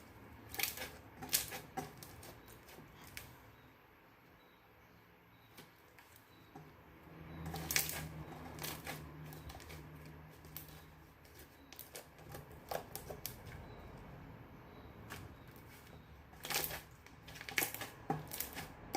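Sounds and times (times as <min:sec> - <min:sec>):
slime clicking and crackling: 0:16.3 - 0:18.9.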